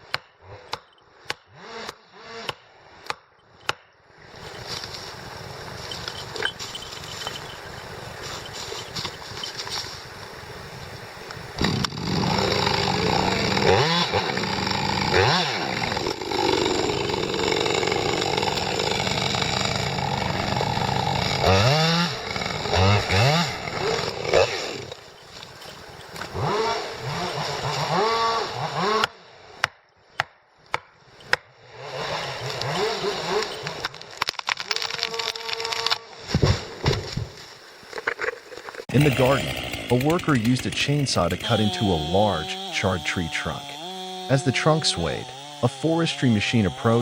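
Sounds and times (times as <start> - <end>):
chainsaw revving and cutting: 1.4 - 2.7, 11.6 - 29.2, 31.6 - 34.0, 38.9 - 47.0.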